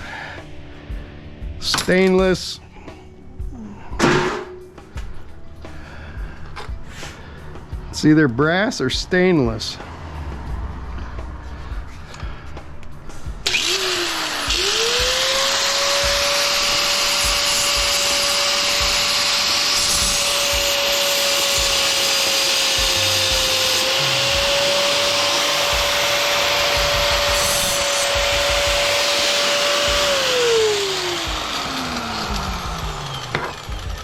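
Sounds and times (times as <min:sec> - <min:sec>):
electric grinder whining: 0:13.4 - 0:34.0
grinding metal: 0:13.4 - 0:34.0.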